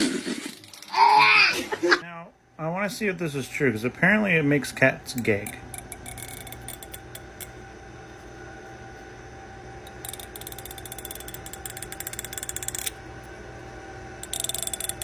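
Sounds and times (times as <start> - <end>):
fingernail along comb teeth: 5.2 - 7.6, 9.9 - 13.0, 14.2 - 15.0.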